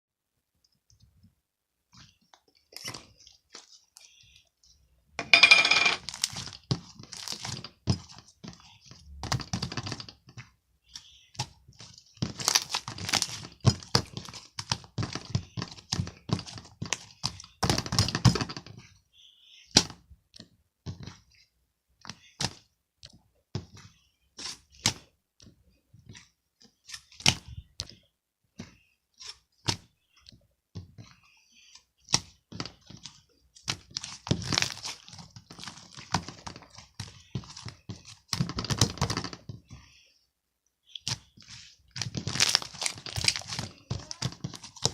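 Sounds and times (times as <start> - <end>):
crinkling handling noises: 6.0 - 19.1, 20.4 - 40.0, 40.9 - 44.9.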